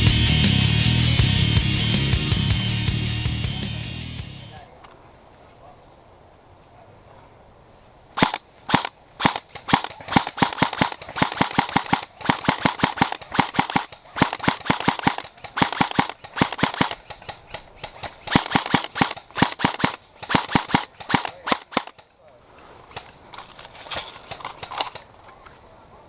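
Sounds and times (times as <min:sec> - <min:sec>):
airsoft guns firing: 0:08.2 - 0:22.1.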